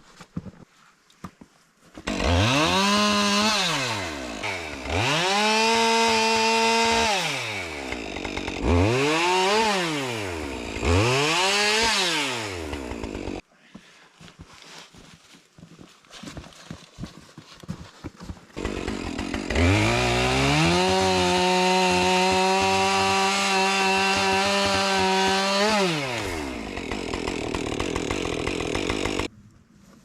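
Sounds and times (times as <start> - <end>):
chainsaw revving and cutting: 2.0 - 13.4, 18.6 - 29.3.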